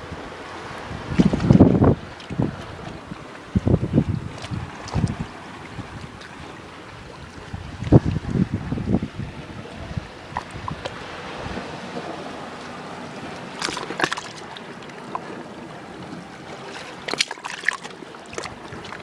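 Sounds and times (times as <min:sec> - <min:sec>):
sea water lapping: 0:00.0 - 0:19.0
sharp water splashes: 0:13.2 - 0:15.4, 0:16.3 - 0:19.0.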